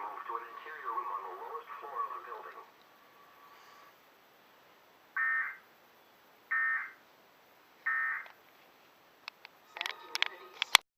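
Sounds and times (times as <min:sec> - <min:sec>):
shrill digital chirps: 0:06.5 - 0:07.0.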